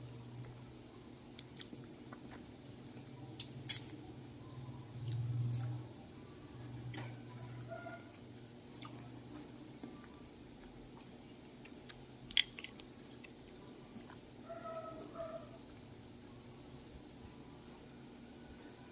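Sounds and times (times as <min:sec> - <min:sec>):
faint low hum: 0:00.0 - 0:18.9
wet chewing: 0:10.0 - 0:14.3.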